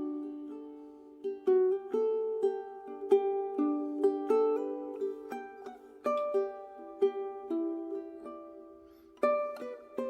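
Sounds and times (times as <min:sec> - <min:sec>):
plucked ukulele melody: 0:00.0 - 0:10.0.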